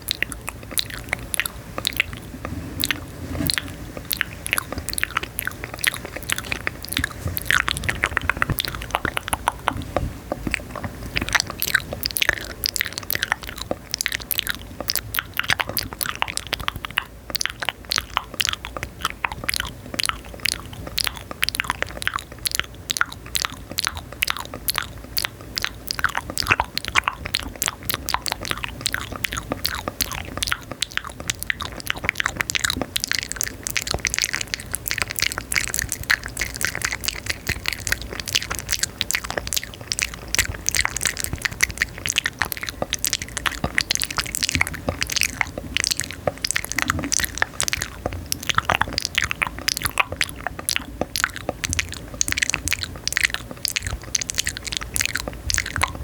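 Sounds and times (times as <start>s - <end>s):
rapid crisp clicks and crackles: 0.0s - 56.0s.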